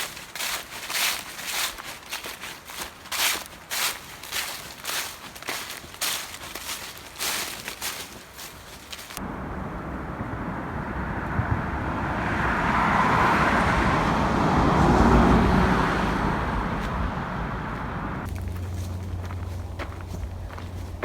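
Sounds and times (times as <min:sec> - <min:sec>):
vehicle passing: 0:09.2 - 0:21.0.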